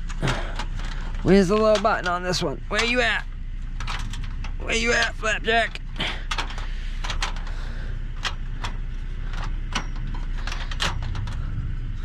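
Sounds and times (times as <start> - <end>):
low engine rumble: 0.0 - 12.0.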